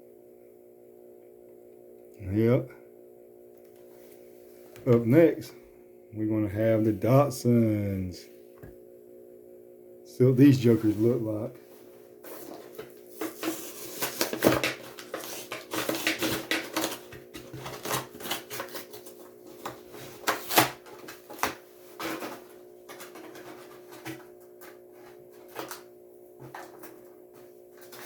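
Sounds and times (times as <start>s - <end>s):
steady low hum: 0.0s - 28.0s
plastic packaging crinkling: 12.3s - 23.9s.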